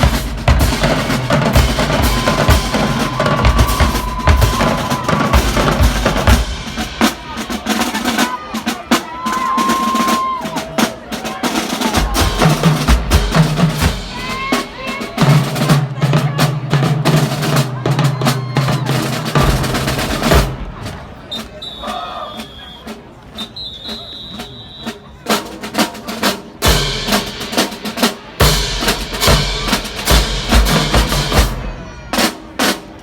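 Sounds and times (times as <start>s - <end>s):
snare drum rolls: 0.0s - 33.0s
crowd voices or whistles: 1.9s - 5.4s, 7.1s - 12.4s, 17.8s - 19.2s, 20.9s - 25.3s.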